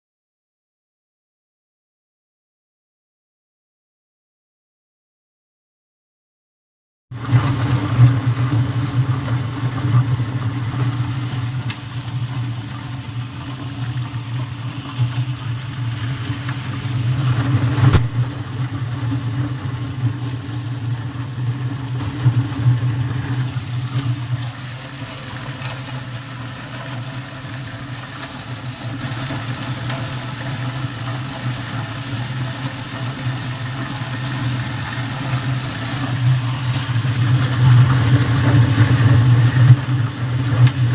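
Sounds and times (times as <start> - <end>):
corn-shelling machine humming: 7.2 - 40.9.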